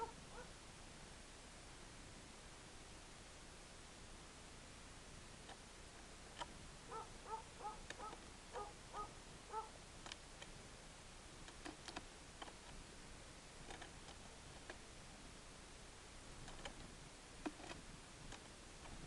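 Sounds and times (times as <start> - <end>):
bird calling: 0.0 - 0.5, 6.9 - 9.8.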